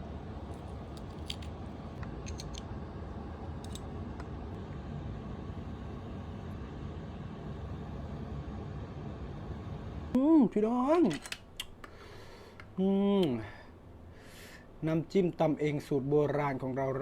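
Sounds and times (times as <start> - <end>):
low background rumble: 0.0 - 10.2.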